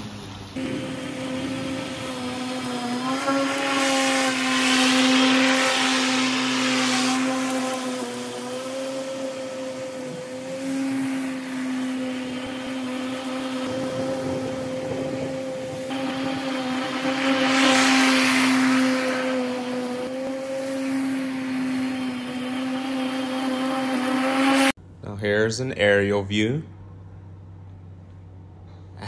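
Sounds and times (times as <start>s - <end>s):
rushing hiss: 0.0s - 23.0s
electric lawn mower whine: 0.0s - 24.8s.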